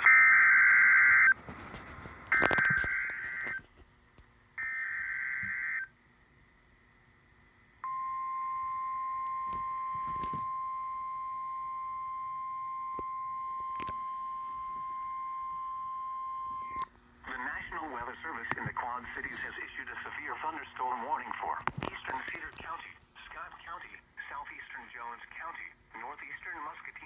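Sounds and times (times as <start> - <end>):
steady warning alarm tone: 0.0 - 1.4, 2.3 - 3.7, 4.6 - 6.0, 7.8 - 16.8.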